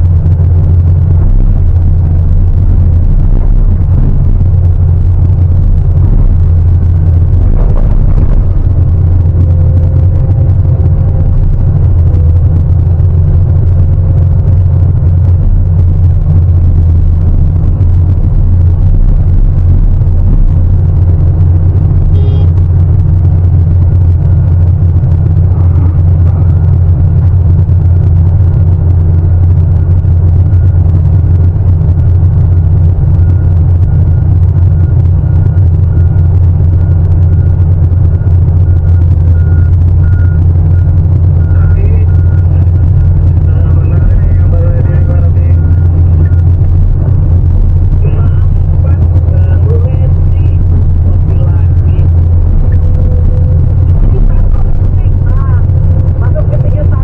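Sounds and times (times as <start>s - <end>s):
excavator diesel engine drone: 0.0s - 57.0s.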